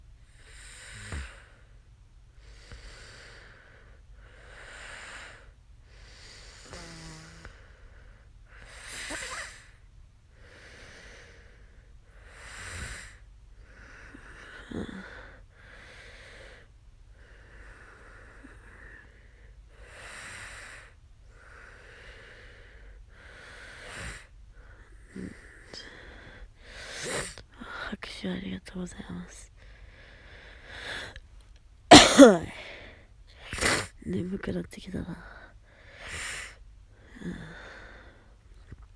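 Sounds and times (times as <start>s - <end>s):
short throaty sounds: 31.9s - 32.5s
woman breathing: 31.9s - 33.0s.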